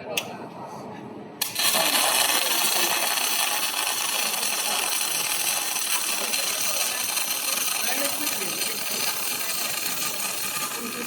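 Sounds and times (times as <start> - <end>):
welding arc hissing: 1.4 - 4.8.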